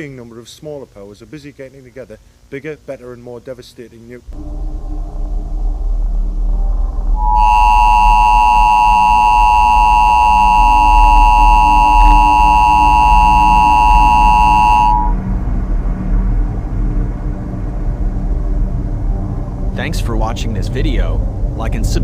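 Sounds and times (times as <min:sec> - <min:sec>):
low steady drone: 0:04.3 - 0:22.0
harsh two-tone alert beep: 0:07.2 - 0:15.2.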